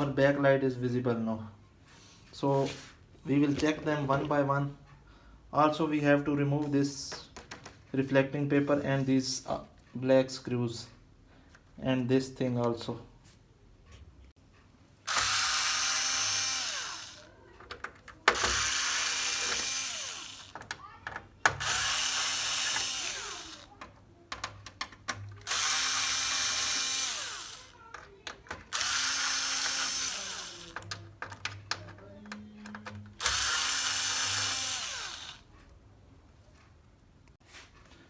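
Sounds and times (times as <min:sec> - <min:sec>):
electric screwdriver motor whining: 0:15.1 - 0:17.3, 0:18.3 - 0:20.6, 0:21.6 - 0:23.8, 0:25.4 - 0:27.8, 0:28.7 - 0:31.0, 0:33.2 - 0:35.5.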